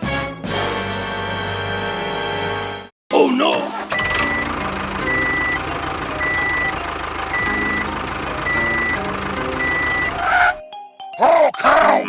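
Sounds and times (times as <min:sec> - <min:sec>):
truck engine running: 0:03.4 - 0:10.6
truck reversing alarm beeping: 0:03.7 - 0:11.1.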